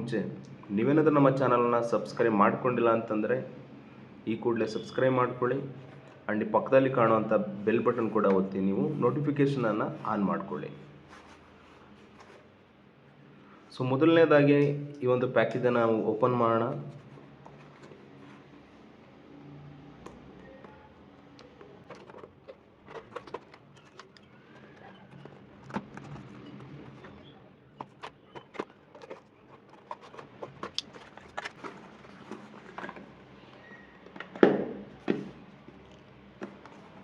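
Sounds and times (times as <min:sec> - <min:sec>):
packaging crackling and tearing: 0:21.4 - 0:33.4.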